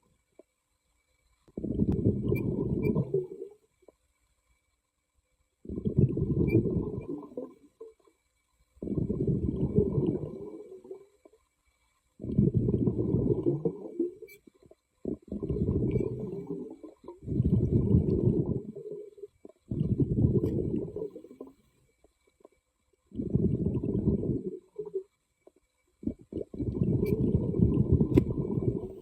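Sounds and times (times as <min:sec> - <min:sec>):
underwater air bubbles rumbling: 0:01.6 - 0:03.5, 0:05.7 - 0:07.6, 0:08.8 - 0:11.0, 0:12.2 - 0:14.3, 0:15.0 - 0:21.7, 0:23.1 - 0:25.0, 0:26.0 - 0:29.0.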